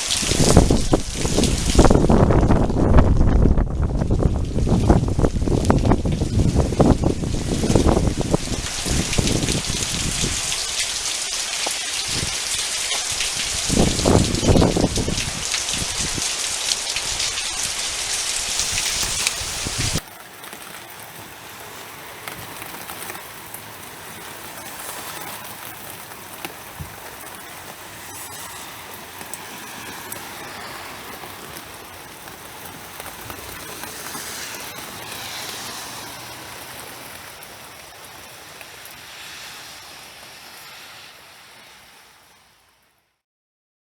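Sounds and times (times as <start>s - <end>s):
heavy rain: 0.0s - 43.1s
raindrop ticks: 18.6s - 39.0s.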